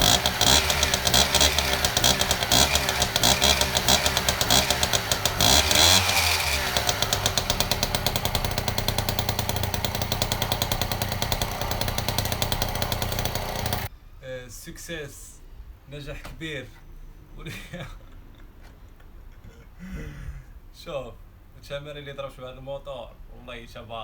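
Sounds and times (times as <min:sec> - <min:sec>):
moped engine revving and idling: 0:00.0 - 0:13.9.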